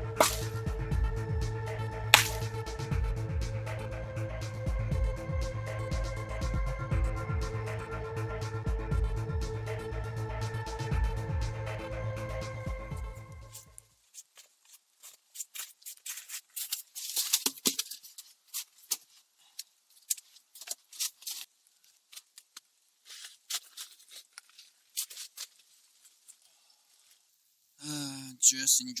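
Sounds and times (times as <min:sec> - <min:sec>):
campfire crackling and popping: 0:00.2 - 0:00.7, 0:02.2 - 0:02.7.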